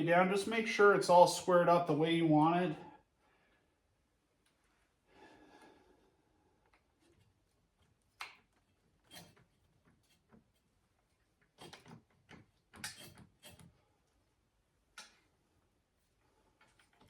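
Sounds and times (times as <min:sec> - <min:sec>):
hand tools clicking and knocking: 0:11.6 - 0:13.7.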